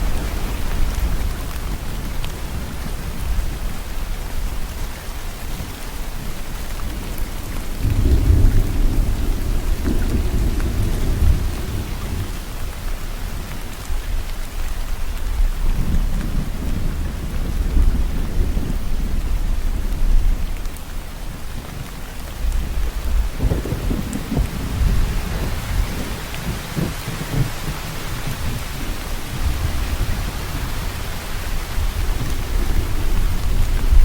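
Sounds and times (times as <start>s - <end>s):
heavy rain: 0.0s - 34.0s
rolling thunder: 7.1s - 12.8s, 15.4s - 21.4s, 22.4s - 34.0s.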